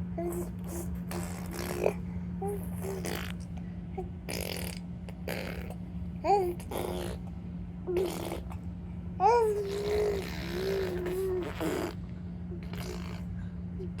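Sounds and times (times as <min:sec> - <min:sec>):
steady low hum: 0:00.0 - 0:14.0
baby babbling: 0:00.2 - 0:03.4, 0:04.0 - 0:07.2, 0:07.9 - 0:08.6, 0:09.2 - 0:12.0
baby blowing raspberries: 0:00.2 - 0:03.4, 0:04.2 - 0:07.2, 0:07.9 - 0:08.6, 0:09.3 - 0:12.0, 0:12.6 - 0:13.3.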